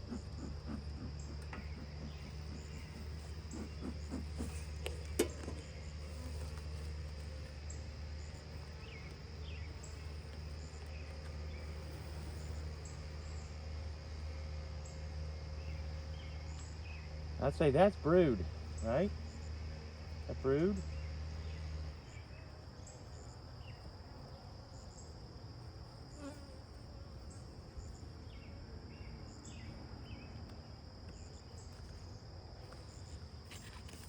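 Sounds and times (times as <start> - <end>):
bees buzzing: 0.0 - 14.1
high insect trill: 0.0 - 34.0.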